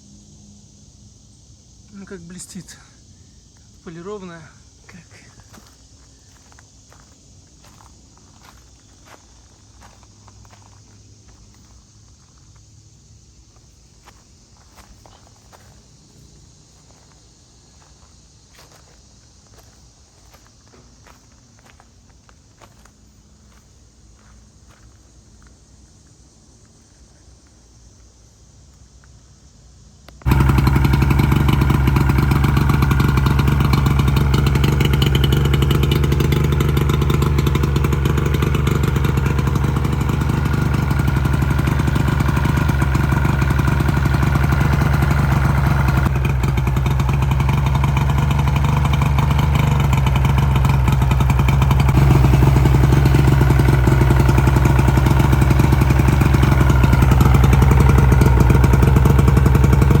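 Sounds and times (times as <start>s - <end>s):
engine running steadily: 30.1s - 60.0s.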